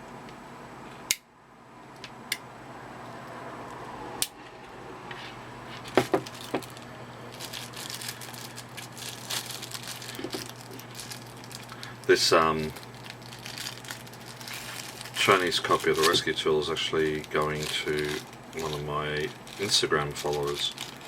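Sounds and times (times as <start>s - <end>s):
low steady hum: 0.0s - 21.0s
crinkly rustling: 5.6s - 21.0s.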